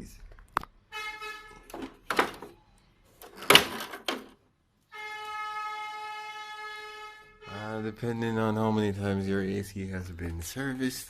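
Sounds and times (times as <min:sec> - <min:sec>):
plastic panel knocks and clatter: 0:01.7 - 0:02.5, 0:03.2 - 0:04.4.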